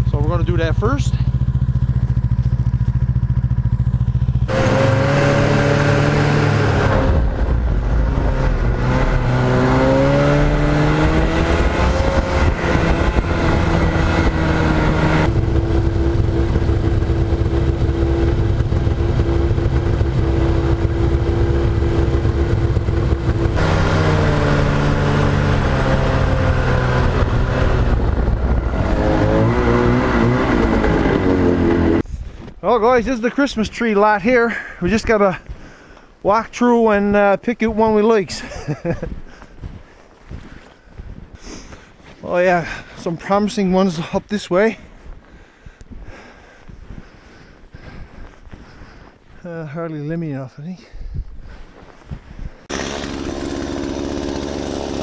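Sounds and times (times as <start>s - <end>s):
snowmobile engine running: 0.0s - 50.2s, 52.6s - 55.0s.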